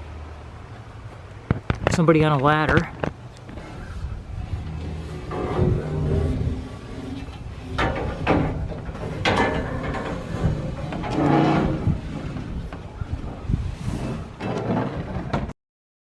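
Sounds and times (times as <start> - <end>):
shed parts knocking and scraping: 2.7 - 15.5.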